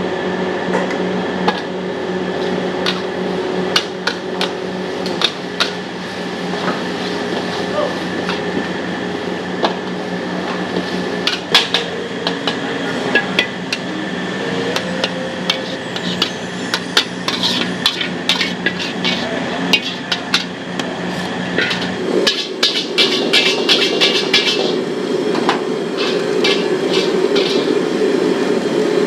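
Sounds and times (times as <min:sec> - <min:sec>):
steady hum: 0:00.0 - 0:29.0
metal spatula scraping a wok: 0:11.2 - 0:13.9, 0:14.6 - 0:24.8, 0:26.0 - 0:27.8.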